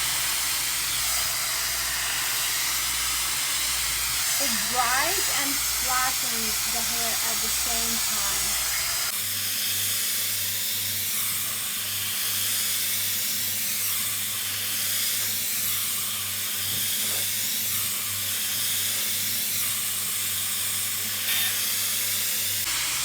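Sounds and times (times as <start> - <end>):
hair dryer blowing: 0.0 - 9.1, 22.7 - 23.0.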